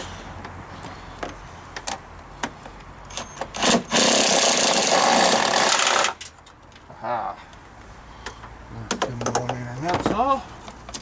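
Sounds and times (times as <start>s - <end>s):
cordless power tool whirring: 3.6s - 6.2s.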